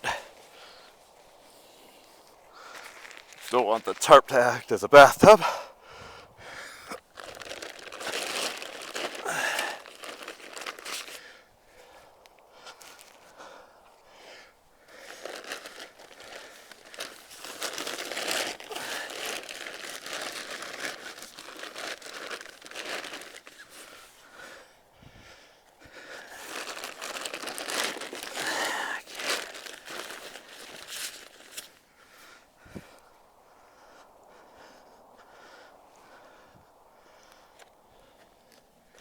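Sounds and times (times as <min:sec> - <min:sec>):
tarp and tent fabric rustling: 0:00.0 - 0:05.4, 0:07.0 - 0:11.3, 0:12.7 - 0:13.4, 0:14.8 - 0:24.5, 0:25.9 - 0:32.1.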